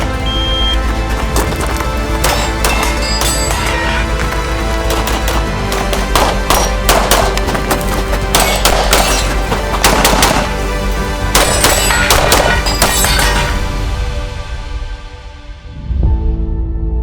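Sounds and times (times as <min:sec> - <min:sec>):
background music: 0:00.0 - 0:17.0
handgun shots: 0:04.9 - 0:10.7, 0:11.3 - 0:13.6.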